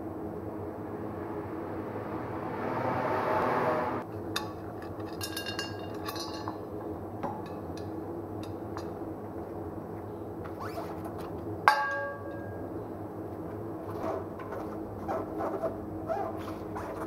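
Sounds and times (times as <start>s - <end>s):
steady low hum: 0.0s - 17.0s
tools clinking on steel wheel rim: 4.3s - 6.7s, 11.7s - 12.6s.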